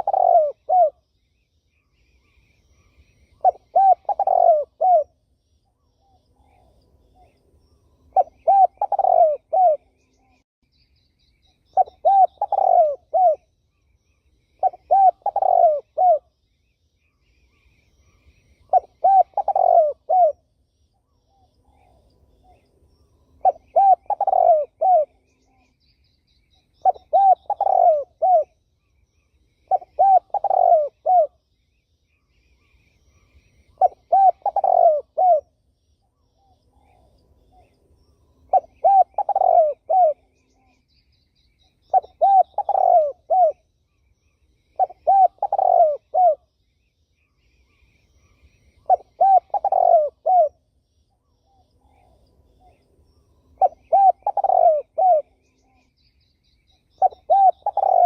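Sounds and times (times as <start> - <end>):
dove cooing: 0.0 - 1.0, 3.3 - 5.2, 8.1 - 10.4, 11.7 - 13.5, 14.6 - 16.3, 18.6 - 20.4, 23.4 - 25.7, 26.8 - 28.6, 29.7 - 31.4, 33.1 - 35.5, 38.5 - 40.8, 41.8 - 43.6, 44.8 - 46.4, 48.2 - 50.6, 53.6 - 55.6, 56.9 - 58.0.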